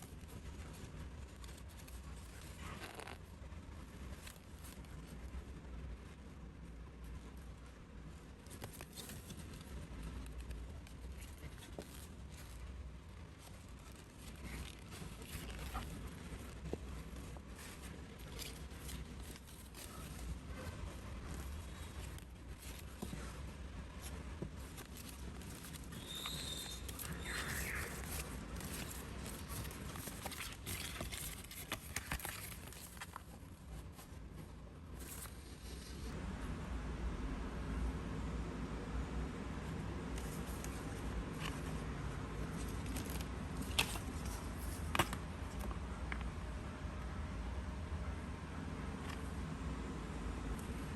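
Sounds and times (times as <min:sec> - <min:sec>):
paper rustling: 0:00.0 - 0:05.3, 0:08.3 - 0:36.1, 0:40.2 - 0:46.3
low steady hum: 0:00.0 - 0:50.9
high squeak: 0:25.9 - 0:28.1.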